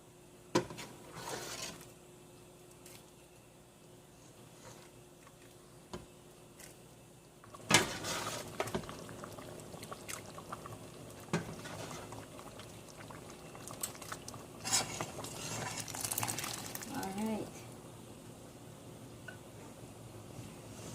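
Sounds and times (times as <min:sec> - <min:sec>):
beans and liquid pouring: 0:11.7 - 0:17.1.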